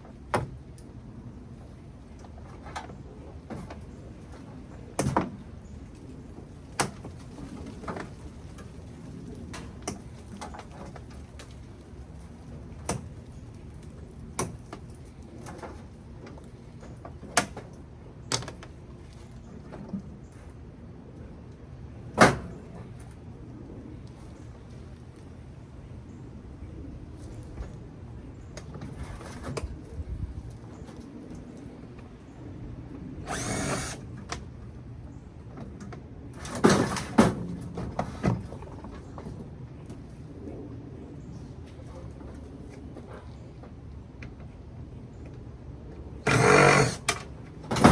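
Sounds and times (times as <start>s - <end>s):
power drill running: 33.3s - 34.0s, 46.3s - 47.2s
steady low hum: 46.2s - 47.2s
metal parts knocking: 46.3s - 47.2s.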